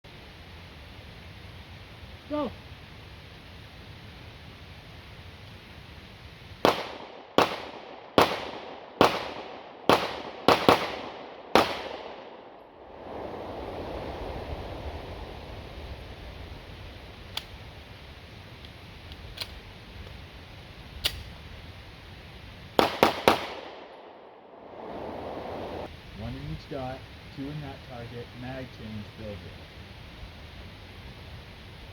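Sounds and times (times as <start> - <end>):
pistol shots: 6.6 - 12.4, 22.8 - 24.1.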